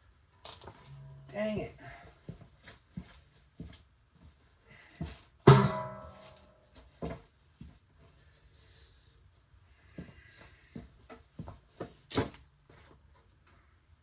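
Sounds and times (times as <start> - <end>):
loud ringing clang: 5.5 - 6.4.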